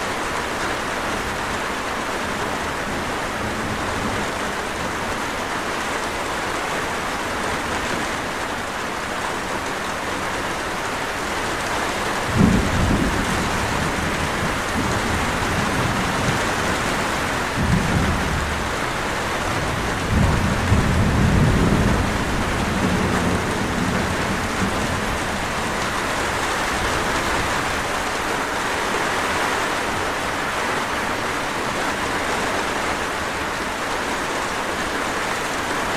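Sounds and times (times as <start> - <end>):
rain hiss: 0.0 - 35.9
low thunder rolling: 12.2 - 28.1.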